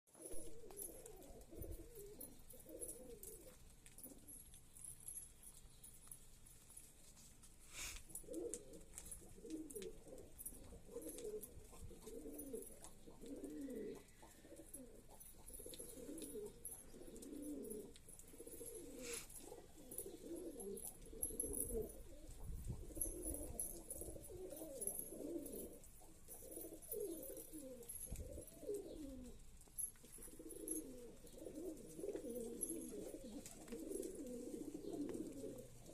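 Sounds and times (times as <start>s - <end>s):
pigeons cooing: 0.2s - 4.4s, 7.8s - 35.9s.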